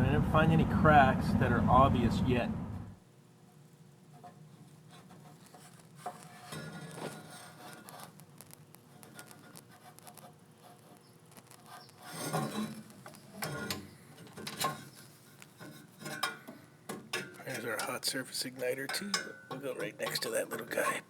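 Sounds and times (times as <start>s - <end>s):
steady low hum: 0.0s - 21.0s
metal parts rubbing and clinking: 4.2s - 21.0s.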